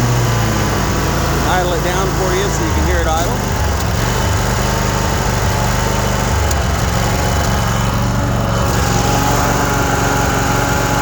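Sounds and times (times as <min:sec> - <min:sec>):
mower engine idling: 0:00.0 - 0:11.0.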